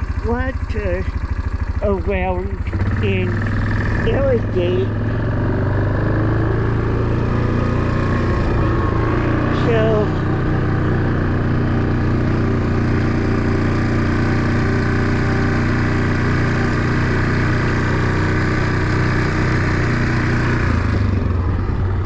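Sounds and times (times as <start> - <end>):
small vehicle engine running: 0.0 - 22.0.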